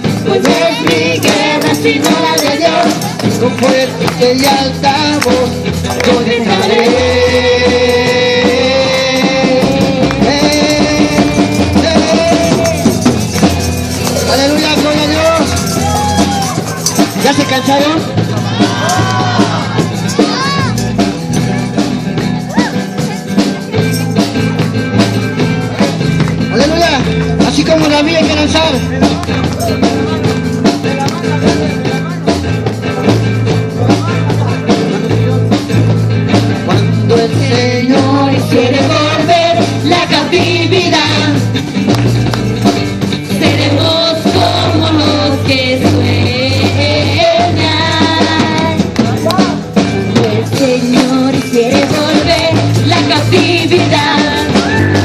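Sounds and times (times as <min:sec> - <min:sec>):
person singing worship song: 0:00.0 - 0:13.3
bass: 0:00.0 - 0:55.0
live guitar and drums: 0:00.0 - 0:55.0.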